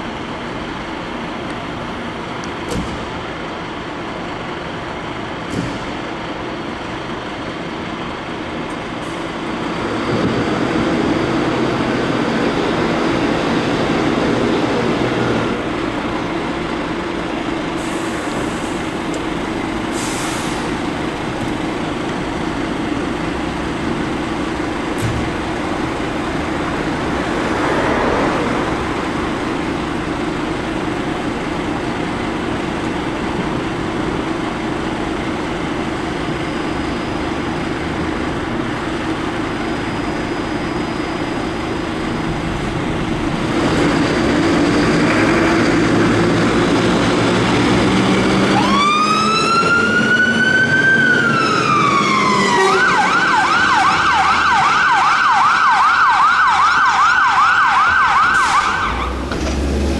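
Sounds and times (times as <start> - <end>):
heavy vehicle engine running: 0.0 - 54.4, 58.2 - 59.9
road noise: 0.0 - 59.9
electronic siren wailing and yelping: 48.6 - 58.8.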